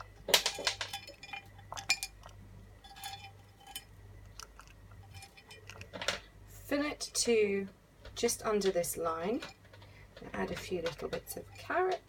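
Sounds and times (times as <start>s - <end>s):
kibble clinking and rattling: 0.0s - 6.3s, 8.0s - 12.0s.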